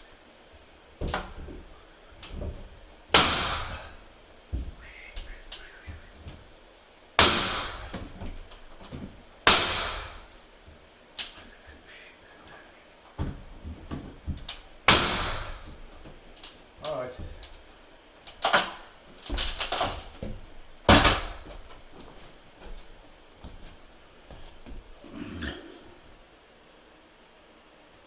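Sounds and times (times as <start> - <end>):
hammer blows on nails: 0.1 - 10.5, 11.2 - 25.6.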